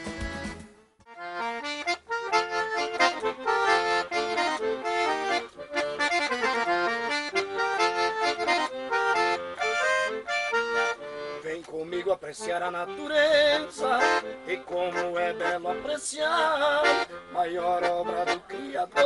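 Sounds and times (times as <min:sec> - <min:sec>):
accordion melody: 0:00.0 - 0:19.0
light accompaniment: 0:00.0 - 0:19.0.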